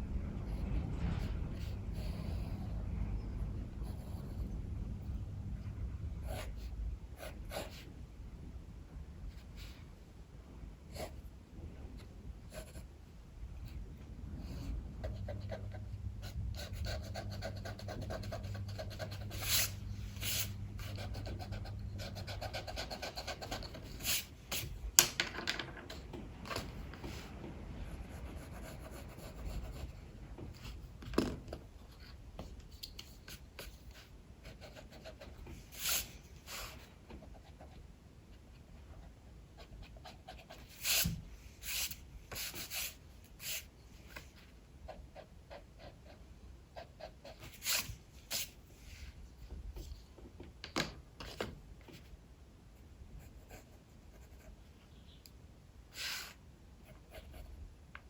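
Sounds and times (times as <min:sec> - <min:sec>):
low rumble of wind: 0:00.0 - 0:25.0, 0:25.7 - 0:47.4
low steady hum: 0:00.0 - 0:58.0
pencil sketching on paper: 0:15.1 - 0:24.6, 0:34.5 - 0:37.4, 0:39.6 - 0:43.6.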